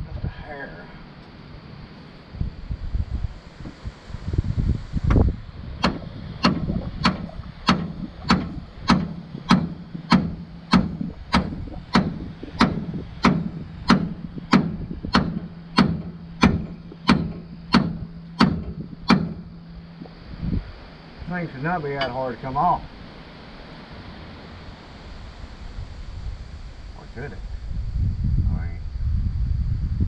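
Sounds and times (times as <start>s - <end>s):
hammer blows on steel: 5.8s - 20.1s
low clattering: 5.8s - 20.2s.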